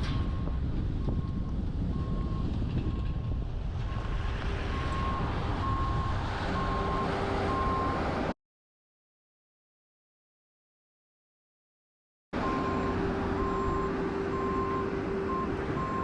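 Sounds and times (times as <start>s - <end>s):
wind noise: 0.0s - 8.2s
vehicle backup alarm beeping: 0.2s - 8.0s, 12.4s - 16.0s.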